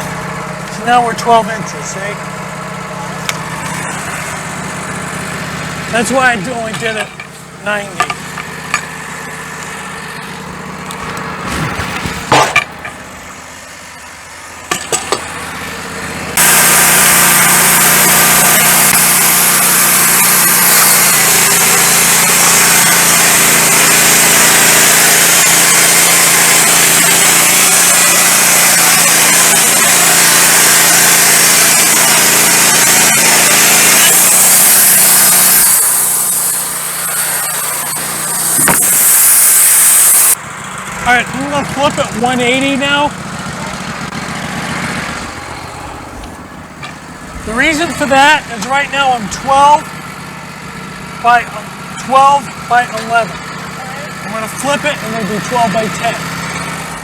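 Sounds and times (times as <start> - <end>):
band saw cutting through log: 0.0 - 57.0
sawmill engine idling: 0.0 - 57.0
sharp clunks: 10.8 - 13.1, 38.6 - 39.0.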